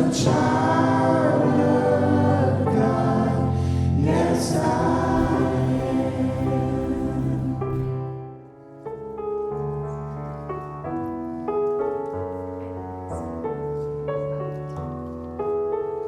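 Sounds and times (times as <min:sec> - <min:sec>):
sustained low bass notes: 0:00.0 - 0:08.3
keyboard playing slow chords: 0:00.0 - 0:14.7.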